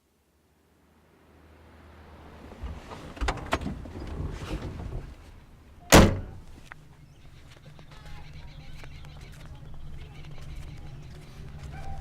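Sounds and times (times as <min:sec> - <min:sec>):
car door slamming: 0:05.8 - 0:06.4
car door clicks: 0:05.9 - 0:06.4.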